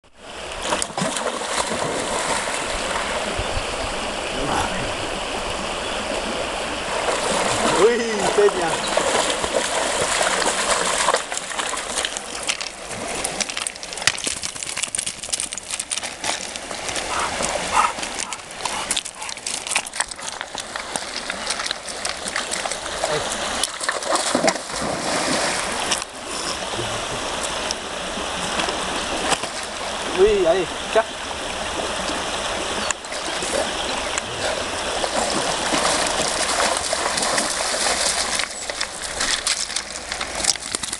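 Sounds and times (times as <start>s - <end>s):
river water running: 0.0s - 40.9s
dog splashing in river: 0.6s - 4.5s, 5.9s - 30.2s, 30.8s - 40.9s
stones knocking underwater: 11.1s - 22.9s.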